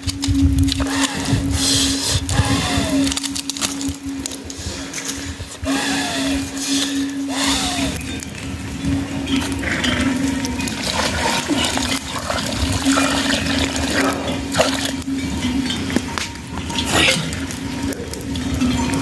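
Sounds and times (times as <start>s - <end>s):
steady low hum: 0.0s - 19.0s
water splashing and pouring: 9.0s - 19.0s.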